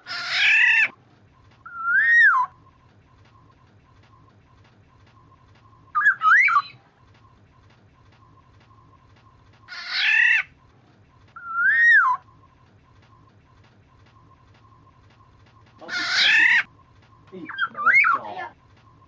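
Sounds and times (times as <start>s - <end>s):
bird whistling and calling: 0.0s - 1.0s, 1.6s - 2.8s, 5.2s - 7.2s, 8.0s - 10.7s, 11.3s - 13.2s, 14.0s - 19.0s.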